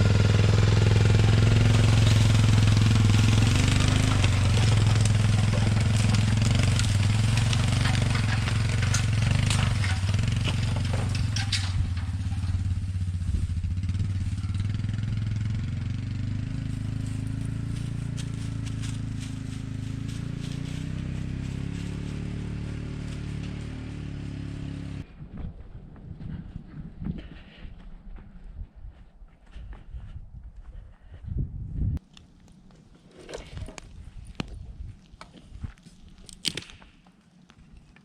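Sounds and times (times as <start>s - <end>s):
utility vehicle engine droning: 0.0s - 26.4s
rattles and knocks: 1.6s - 14.7s.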